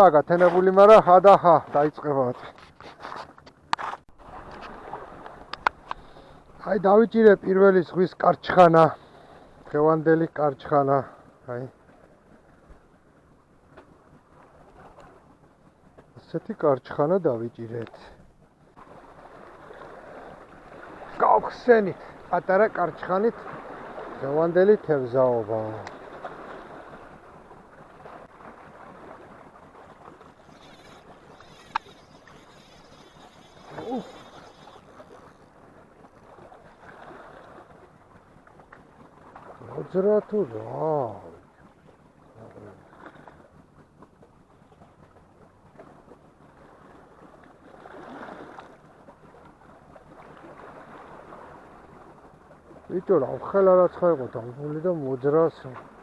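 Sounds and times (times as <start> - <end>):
faint ticks: 5.2 - 6.1, 25.8 - 26.0, 30.4 - 35.5
sea water washing on shore: 18.0 - 43.6, 46.6 - 56.0
water washing against shore: 25.7 - 40.3.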